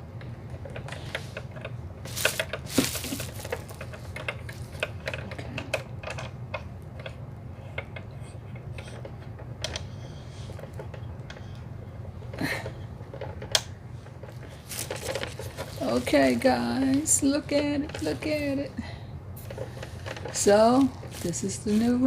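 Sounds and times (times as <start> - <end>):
light stand clicks and rattles: 0.2 - 7.2.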